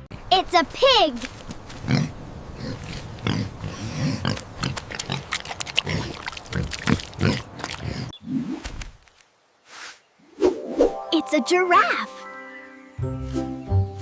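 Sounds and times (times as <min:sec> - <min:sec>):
pig grunting: 0:01.8 - 0:08.2.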